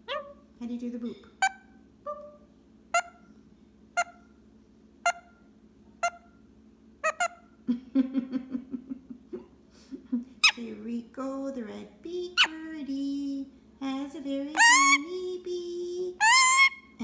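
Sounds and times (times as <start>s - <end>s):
parrot low chattering: 0.0s - 0.4s, 12.4s - 12.6s, 14.6s - 15.1s, 16.2s - 16.8s
parrot boop calls: 3.0s - 3.2s, 4.0s - 4.2s, 7.0s - 7.4s, 14.6s - 15.0s, 16.2s - 16.8s.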